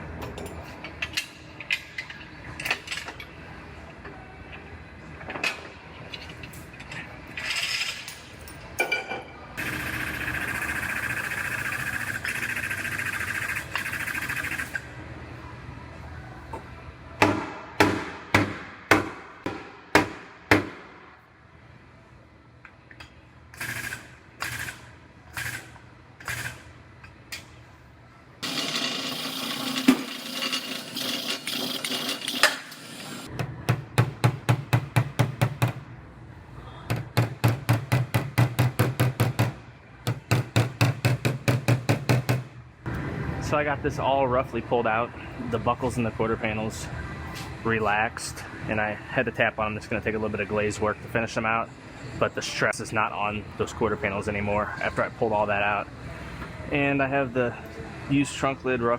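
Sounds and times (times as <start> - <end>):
steady machine noise: 9.6 - 15.0.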